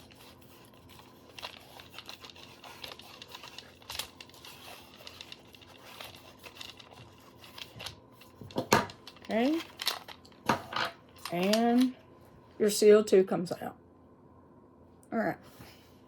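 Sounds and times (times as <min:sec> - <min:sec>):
small clicks and scrapes of handling: 0:00.0 - 0:11.9.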